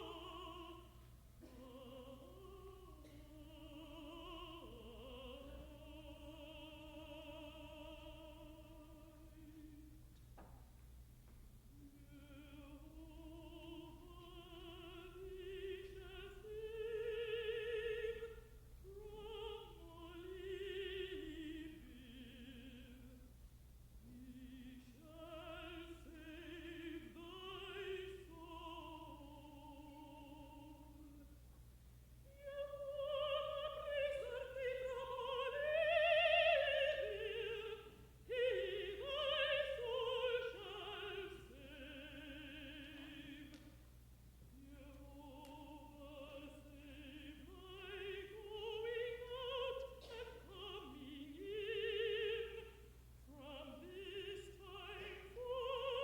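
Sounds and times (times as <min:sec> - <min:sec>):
contralto singing with vibrato: 0:00.0 - 0:10.0, 0:11.8 - 0:23.4, 0:24.0 - 0:31.4, 0:32.3 - 0:43.7, 0:44.5 - 0:56.0
low electrical hum: 0:00.0 - 0:56.0.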